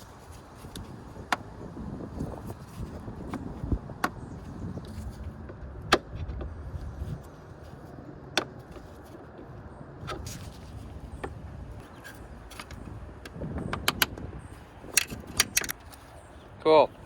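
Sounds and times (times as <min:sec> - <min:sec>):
tools clicking and knocking: 0:12.5 - 0:14.2, 0:14.9 - 0:16.1.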